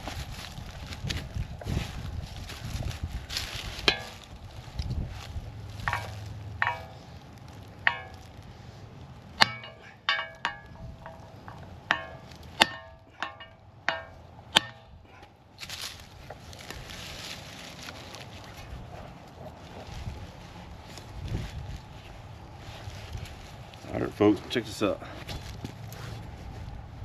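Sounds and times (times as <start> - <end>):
wind noise hiss: 0.0 - 6.4, 19.8 - 27.0
metal tools clanking: 5.8 - 7.2, 9.4 - 15.3.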